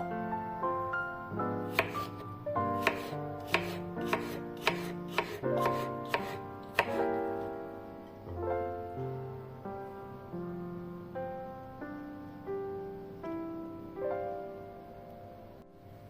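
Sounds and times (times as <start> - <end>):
soft piano music: 0.0 - 16.0
knife chopping on cutting board: 1.7 - 2.2, 2.8 - 7.0.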